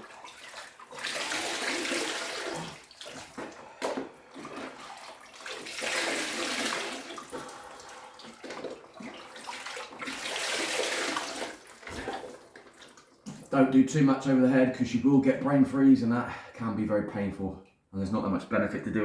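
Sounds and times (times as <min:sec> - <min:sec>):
water pouring and splashing: 0:00.0 - 0:13.7.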